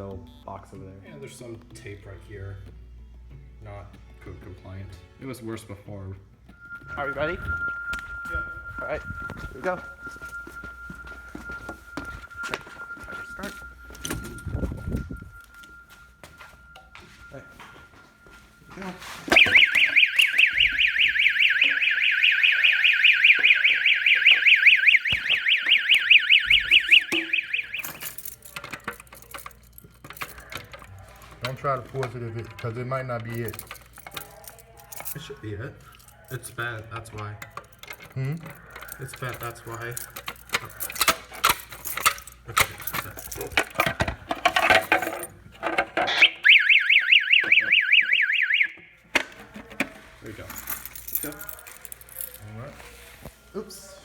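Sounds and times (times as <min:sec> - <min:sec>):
warbling warning siren: 0:06.5 - 0:28.3, 0:45.6 - 0:49.0
plastic cover clicking and rattling: 0:28.0 - 0:32.8, 0:37.4 - 0:46.3.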